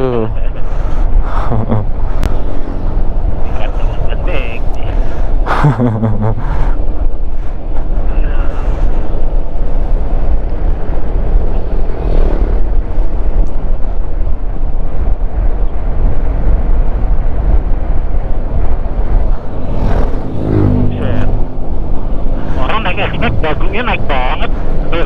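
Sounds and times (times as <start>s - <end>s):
road noise: 0.0s - 25.0s
wind rumble on microphone: 0.0s - 25.0s
scooter engine: 0.7s - 14.3s, 18.0s - 23.2s.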